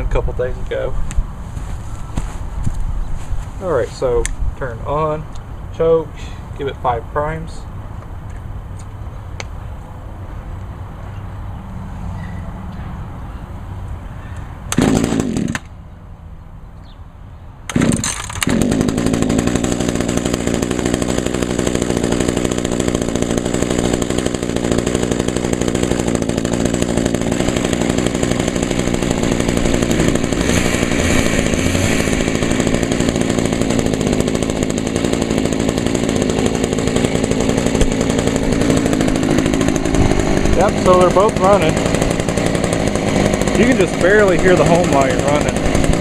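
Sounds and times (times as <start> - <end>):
faint second trimmer engine: 14.7 - 15.7, 17.7 - 46.0
hedge trimmer engine running: 14.7 - 15.7, 17.7 - 46.0.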